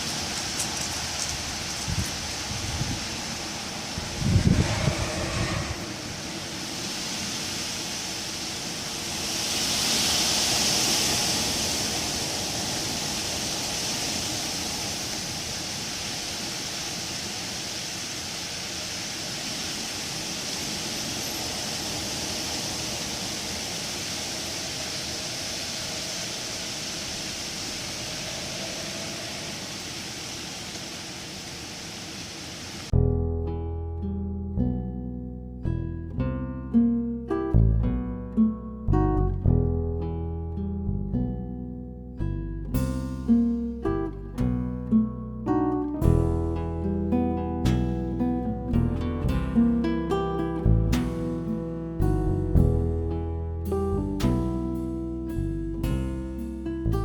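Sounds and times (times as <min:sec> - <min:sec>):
wind blowing through trees: 0:00.0 - 0:32.9, 0:42.7 - 0:44.5.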